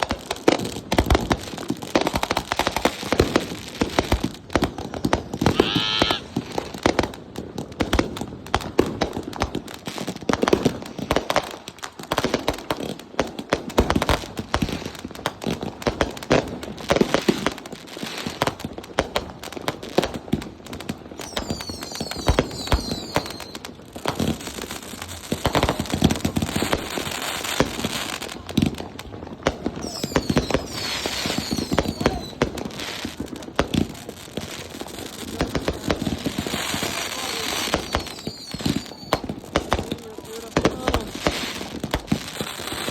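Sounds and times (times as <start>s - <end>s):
fireworks bangs and pops: 0.0s - 42.9s
high whistling fireworks: 0.0s - 42.9s.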